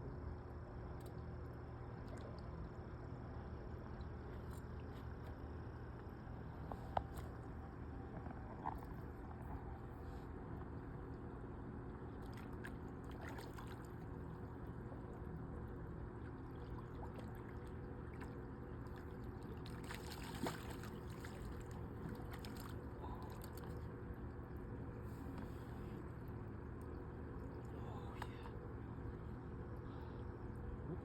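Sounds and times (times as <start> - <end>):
steady low hum: 0.0 - 31.0
water trickling and splashing: 12.1 - 15.4, 16.0 - 23.9.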